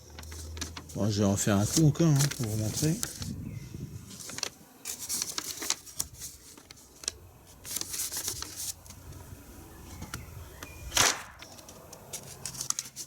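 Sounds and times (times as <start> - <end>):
paper rustling: 0.0 - 9.2, 11.0 - 13.0
paper popper crack: 10.9 - 13.0.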